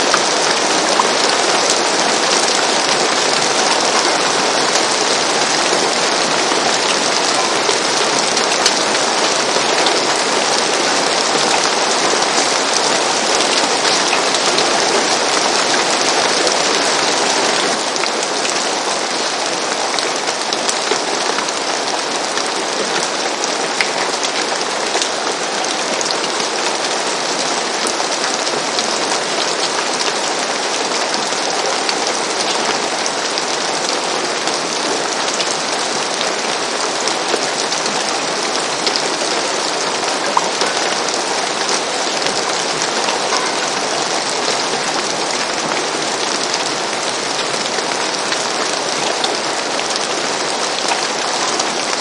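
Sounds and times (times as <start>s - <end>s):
rain falling on a roof: 0.0s - 52.0s.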